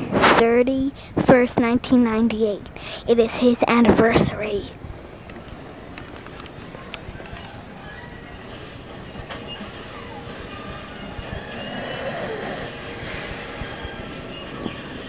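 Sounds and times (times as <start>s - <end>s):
man snoring: 11.7s - 12.8s.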